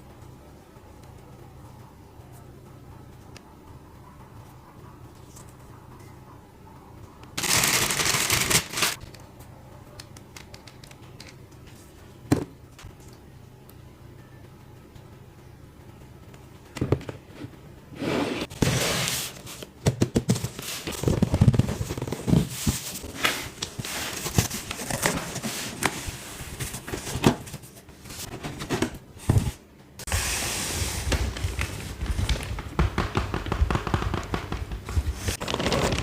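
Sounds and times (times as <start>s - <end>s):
packaging clicks and crinkling: 7.4s - 9.2s.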